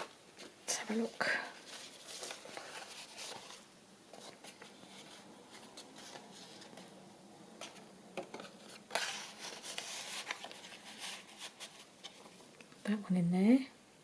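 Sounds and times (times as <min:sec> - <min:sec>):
paper rustling and scraping: 0:00.8 - 0:07.0, 0:07.6 - 0:12.4.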